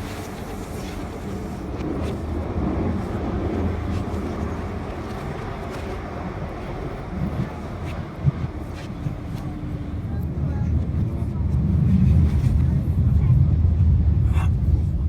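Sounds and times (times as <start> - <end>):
underground train rumbling: 0.0 - 15.0.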